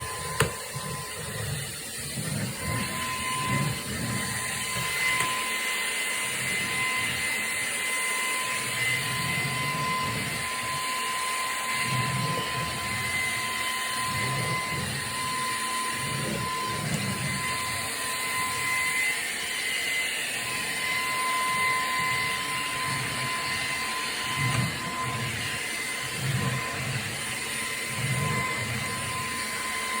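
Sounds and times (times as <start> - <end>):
vacuum cleaner running: 0.0 - 30.0.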